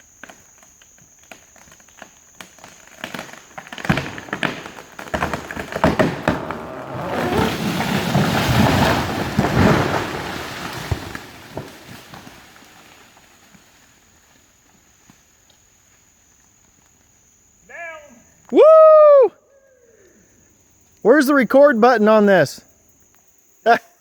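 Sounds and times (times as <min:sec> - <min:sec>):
tree trunk cracking: 0:00.2 - 0:14.5
falling tree crashing down: 0:02.4 - 0:14.4.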